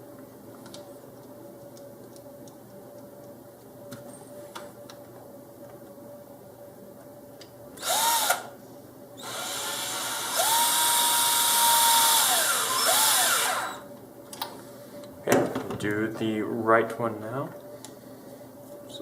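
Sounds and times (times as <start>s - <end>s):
electric screwdriver whining: 7.8s - 8.5s, 9.2s - 13.8s.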